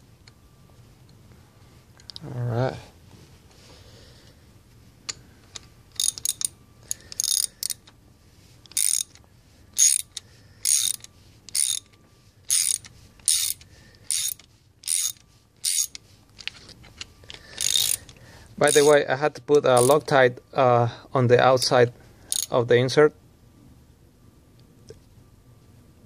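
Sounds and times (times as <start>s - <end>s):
ratchet wrench clicking: 5.9s - 7.9s, 8.7s - 9.2s, 9.8s - 11.9s, 12.5s - 16.0s, 17.3s - 19.0s, 19.8s - 20.0s, 22.3s - 22.5s.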